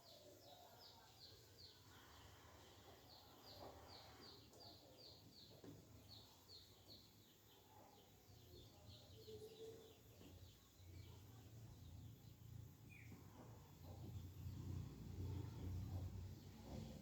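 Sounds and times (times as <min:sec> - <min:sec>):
faint bird chirps: 0:00.0 - 0:11.8.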